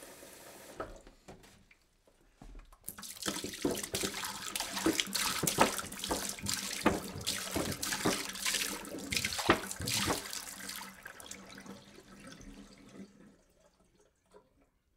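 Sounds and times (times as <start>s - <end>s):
water dripping: 2.6s - 14.9s
water pouring from a jug: 2.9s - 14.7s.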